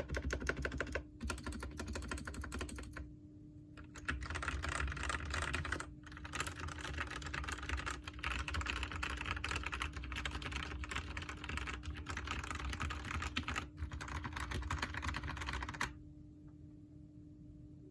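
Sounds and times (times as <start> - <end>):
fast mechanical keyboard typing: 0.0 - 3.0, 3.8 - 16.0.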